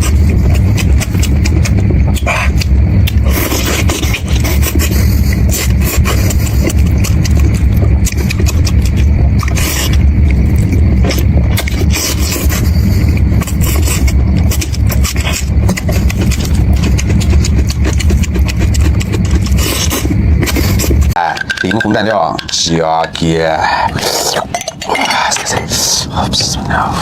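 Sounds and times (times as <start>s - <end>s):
close chewing: 0.0s - 21.2s
low rumble: 0.0s - 27.0s.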